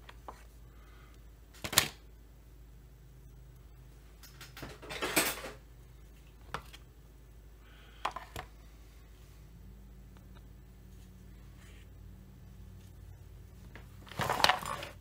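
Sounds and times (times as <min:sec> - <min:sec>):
small tools clattering: 0:04.2 - 0:05.6, 0:14.0 - 0:15.0.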